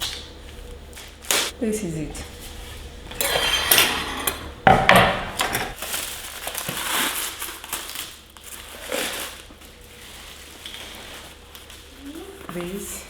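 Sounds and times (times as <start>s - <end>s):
packing material crinkling: 5.8s - 13.0s.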